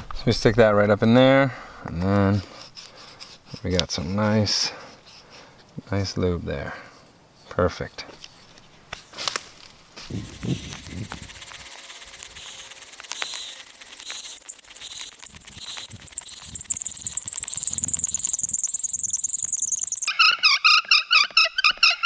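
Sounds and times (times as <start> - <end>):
bow drill spindle squealing: 12.0 - 20.1.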